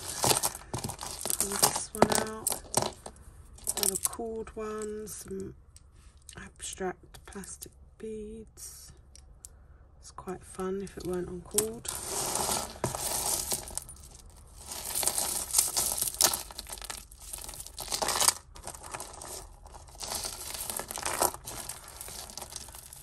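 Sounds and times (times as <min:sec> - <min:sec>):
beads and metal pieces clinking: 0:00.0 - 0:04.9, 0:10.9 - 0:23.0.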